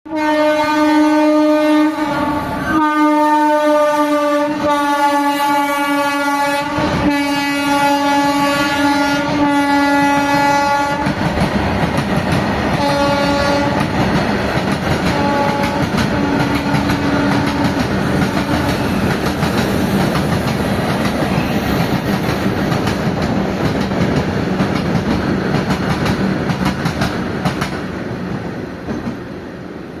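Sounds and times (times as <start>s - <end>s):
train horn blasts: 0.1s - 11.2s, 12.8s - 13.9s, 15.0s - 19.0s
train wheels clattering over rail joints: 11.0s - 27.9s.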